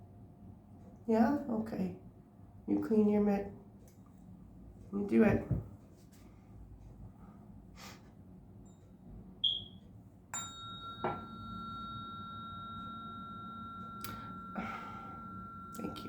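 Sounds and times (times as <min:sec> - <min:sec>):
tuning fork ringing: 0:09.4 - 0:16.0.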